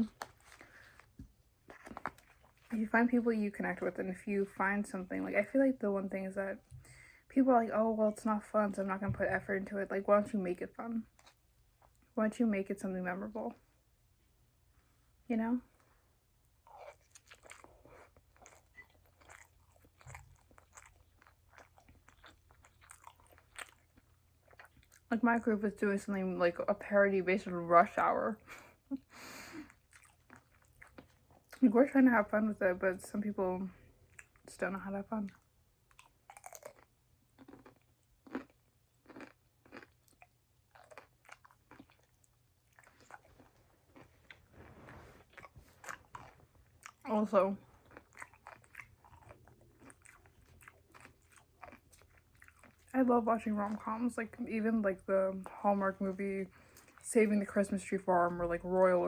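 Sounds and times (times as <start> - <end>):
chewing crunchy food: 16.6 - 25.5, 29.5 - 31.6, 34.0 - 34.5, 35.2 - 53.0.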